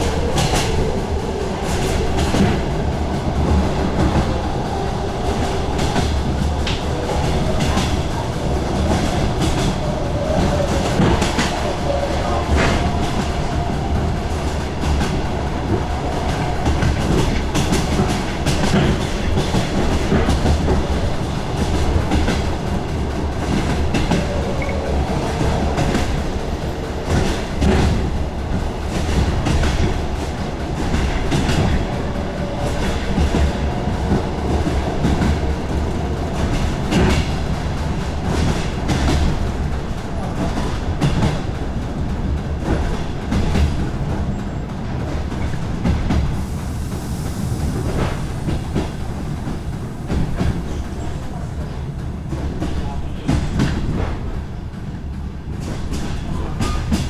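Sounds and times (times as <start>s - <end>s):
wheels clacking over rail joints: 0.0s - 46.5s
train rumble: 0.0s - 57.0s.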